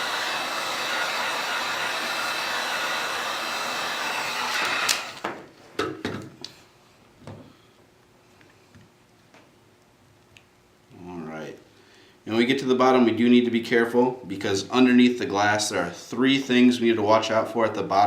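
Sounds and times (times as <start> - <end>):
hot-air blower running: 0.0 - 5.5.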